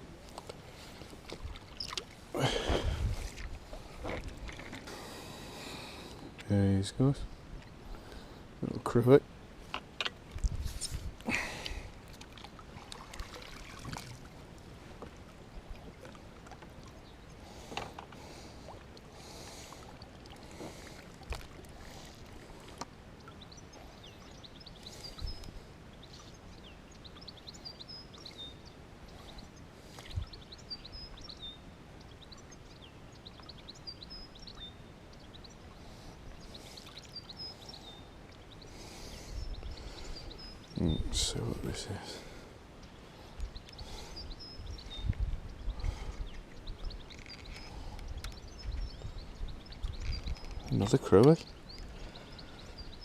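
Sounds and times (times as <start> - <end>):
light water sounds: 0.0 - 6.6, 9.6 - 53.0
small birds chirping: 1.7 - 2.6, 16.6 - 53.0.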